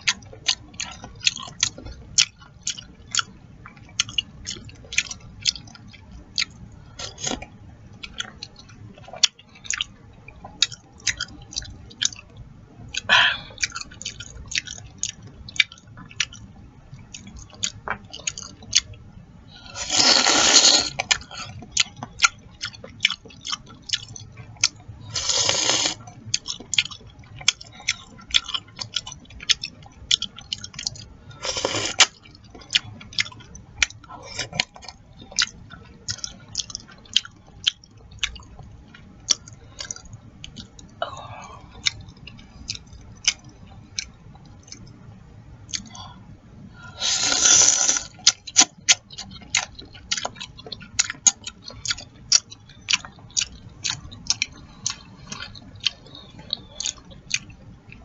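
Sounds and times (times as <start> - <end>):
wet chewing and lip smacks: 0.0 - 19.1, 19.8 - 41.0, 41.6 - 46.2, 47.0 - 58.0
slurping soup: 19.7 - 21.0, 25.1 - 26.0, 31.4 - 32.1, 46.9 - 48.1.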